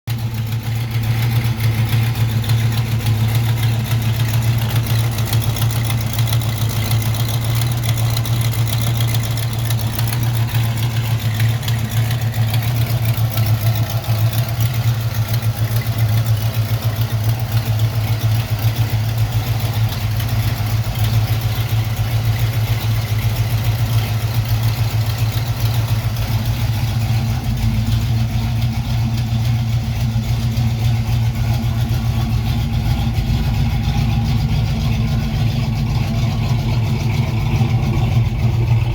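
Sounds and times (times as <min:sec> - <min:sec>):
car engine idling: 0:00.0 - 0:38.9.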